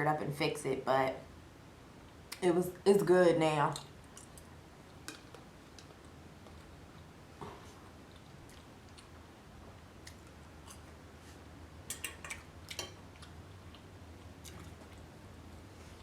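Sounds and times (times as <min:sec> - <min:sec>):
person chewing: 0:04.1 - 0:09.2, 0:10.0 - 0:11.0.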